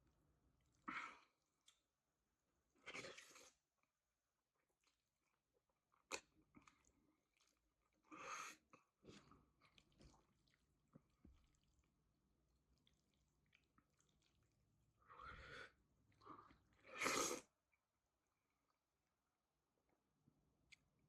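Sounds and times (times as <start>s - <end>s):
person chewing: 8.6s - 11.9s, 12.8s - 14.6s.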